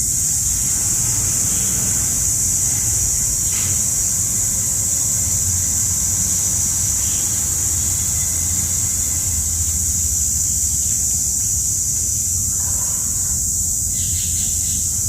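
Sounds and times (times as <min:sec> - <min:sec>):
high-pitched hiss: 0:00.0 - 0:15.0.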